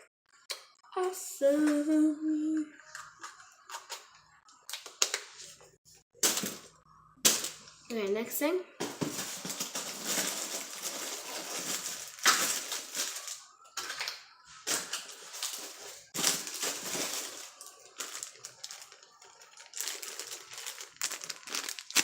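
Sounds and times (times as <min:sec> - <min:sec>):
plastic packaging crinkling: 0:08.8 - 0:22.0.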